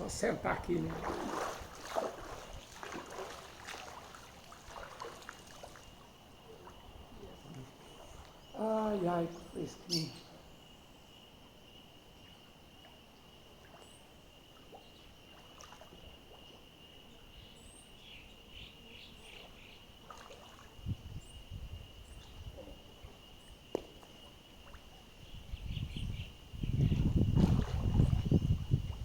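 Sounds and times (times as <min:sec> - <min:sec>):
wind rumbling on microphone: 0:00.0 - 0:03.4, 0:20.8 - 0:23.2, 0:25.2 - 0:29.0
small birds chirping: 0:00.0 - 0:11.3, 0:16.4 - 0:20.5, 0:24.8 - 0:29.0
insect drone: 0:00.0 - 0:29.0.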